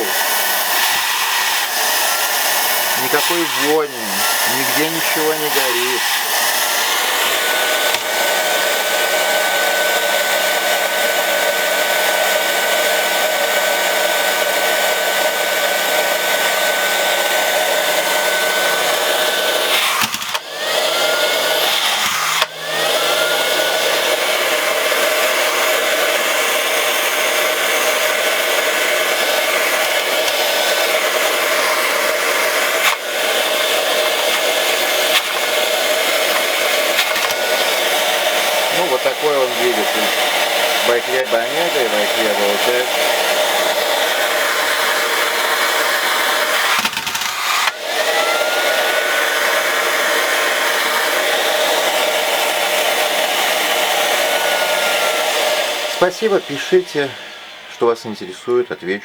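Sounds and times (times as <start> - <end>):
robot vacuum fan whining: 0.0 - 59.0.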